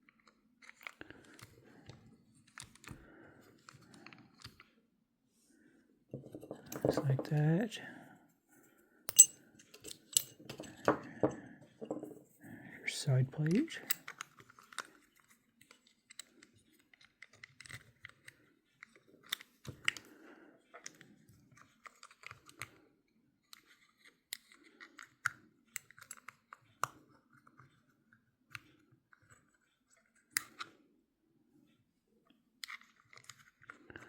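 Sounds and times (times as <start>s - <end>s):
small metal parts clicking and scraping: 9.1s - 11.0s.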